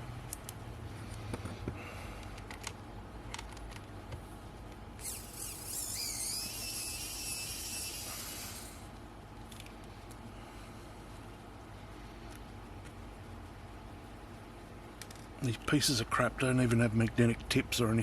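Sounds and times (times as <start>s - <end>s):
high wavering squeal: 5.0s - 8.9s.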